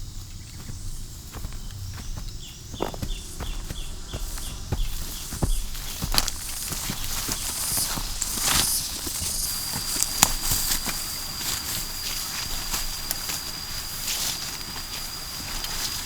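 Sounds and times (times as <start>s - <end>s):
footsteps crunching on leaves: 0.0s - 16.0s.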